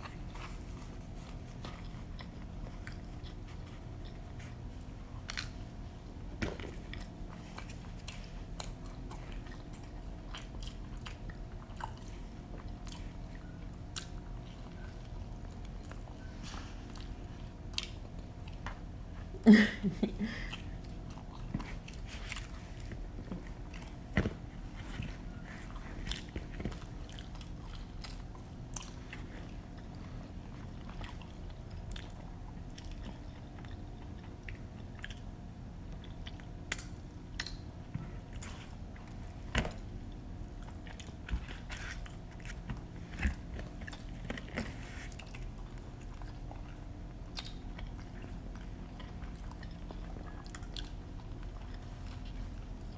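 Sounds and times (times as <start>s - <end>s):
pizza chewing: 0.0s - 19.4s, 20.0s - 52.9s
faint steady hum: 0.0s - 52.9s
lip smacking and mouth clicks: 35.9s - 37.7s.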